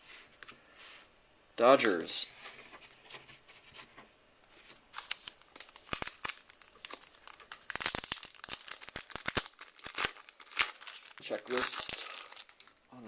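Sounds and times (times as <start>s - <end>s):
plastic wrapper crinkling and tearing: 4.9s - 12.9s.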